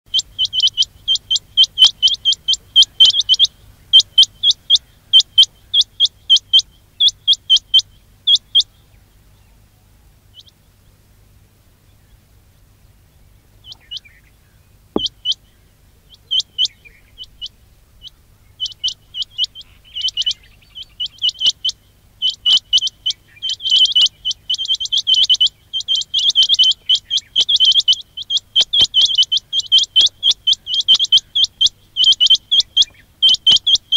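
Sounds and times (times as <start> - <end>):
quail chirping: 0.1 - 9.0, 10.3 - 10.6, 13.6 - 14.3, 14.9 - 33.9.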